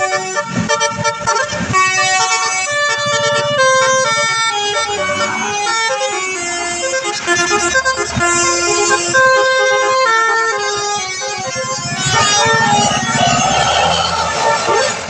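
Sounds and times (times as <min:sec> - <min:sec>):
musical bus horn playing a tune: 0:00.0 - 0:15.0.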